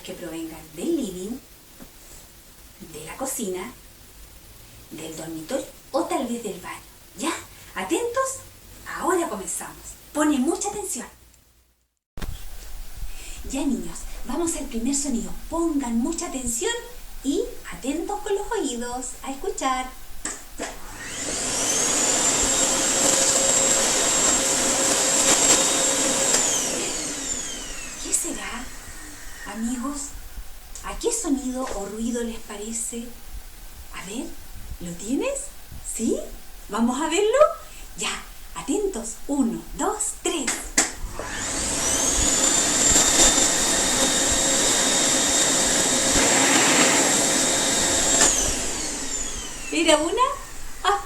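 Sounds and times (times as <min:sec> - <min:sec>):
vacuum cleaner motor whine: 0:20.6 - 0:30.1, 0:41.0 - 0:51.0.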